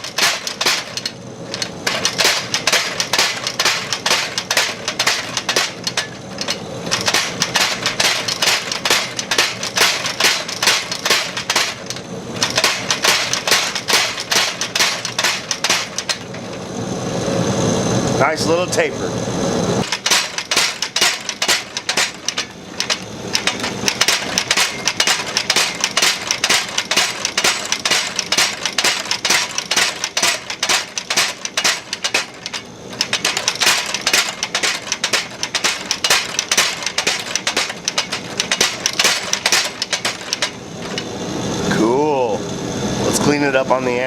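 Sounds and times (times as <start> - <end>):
hammer striking hot steel on anvil: 0.0 - 16.6, 19.8 - 41.2.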